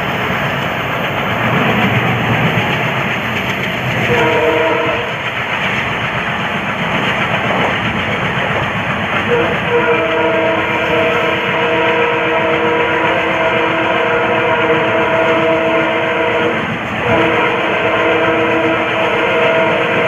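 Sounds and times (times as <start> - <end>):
moving train running noise: 0.0 - 20.0
diesel locomotive horn blasts: 4.0 - 5.3, 9.2 - 20.0.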